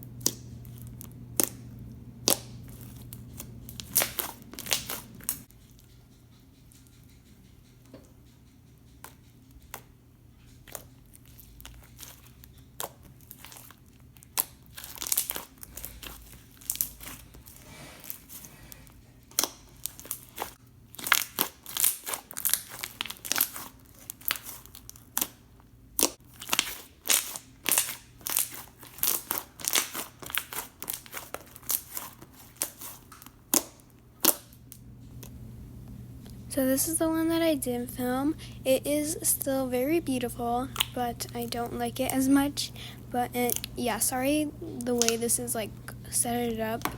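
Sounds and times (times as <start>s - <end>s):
slime squished by hand: 0.1s - 5.5s, 10.6s - 34.6s, 44.6s - 45.4s.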